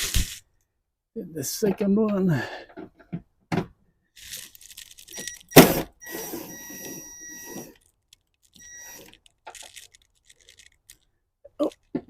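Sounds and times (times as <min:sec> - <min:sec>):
electric tool motor whining: 0:06.0 - 0:07.8.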